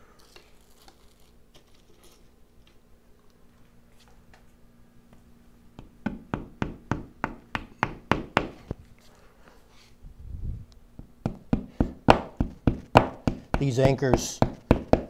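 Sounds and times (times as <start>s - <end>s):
hammer knocking wall anchor: 11.2s - 15.0s.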